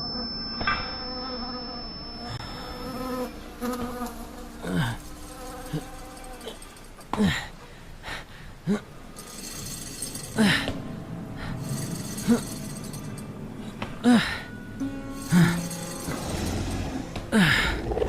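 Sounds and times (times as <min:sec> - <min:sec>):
drone of steady tones: 0:00.0 - 0:07.1.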